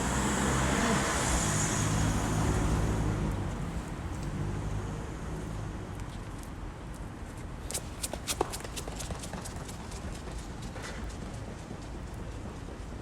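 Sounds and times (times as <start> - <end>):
vehicle passing on wet road: 0.0 - 5.9.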